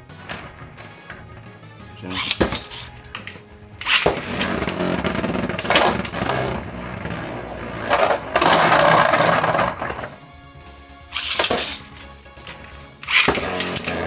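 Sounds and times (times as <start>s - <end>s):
spinning tops whirring and grinding: 2.1s - 10.2s, 11.1s - 14.0s
spinning tops clicking as they collide: 11.2s - 14.0s.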